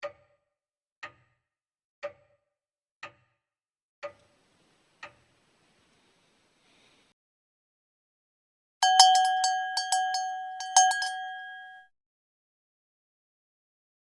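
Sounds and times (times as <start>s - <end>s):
faint steady hiss: 4.2s - 7.1s
clock ticking with short ring: 8.8s - 11.8s.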